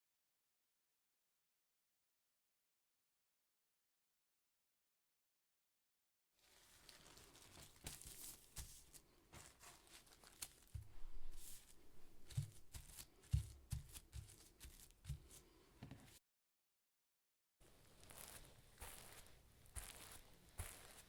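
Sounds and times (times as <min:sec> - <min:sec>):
plastic bags crunching: 0:06.4 - 0:13.6.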